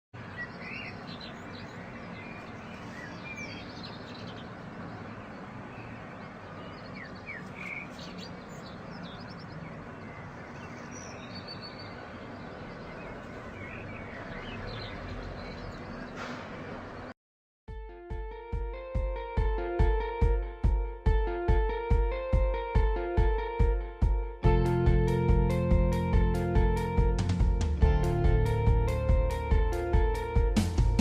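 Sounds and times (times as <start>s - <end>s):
birds chirping: 0.2s - 17.1s
outdoor ambience: 0.2s - 17.2s.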